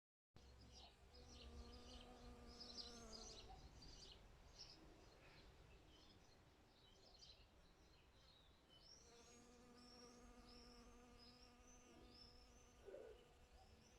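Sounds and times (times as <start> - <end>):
birds chirping: 0.4 - 13.9
flying insect buzzing: 1.2 - 3.4, 9.1 - 13.5.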